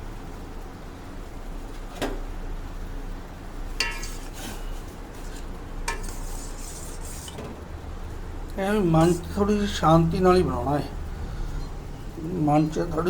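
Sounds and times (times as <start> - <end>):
metal utensil clinking on pot: 3.8 - 4.4.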